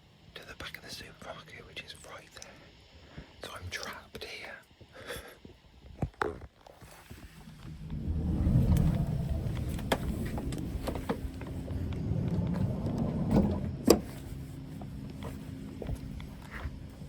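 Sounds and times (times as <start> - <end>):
lorry engine rumble: 7.1 - 17.0.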